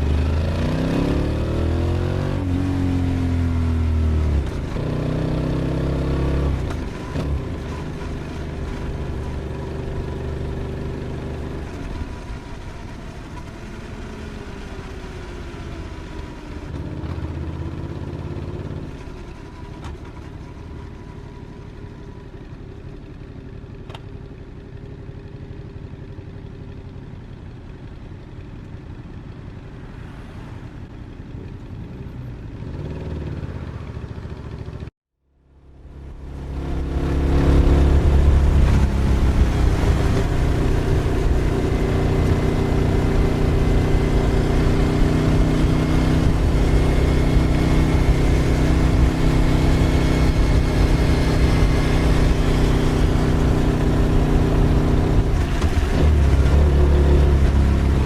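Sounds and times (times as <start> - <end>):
motorcycle engine revving: 0.0 - 20.6, 29.6 - 34.9, 35.5 - 58.0.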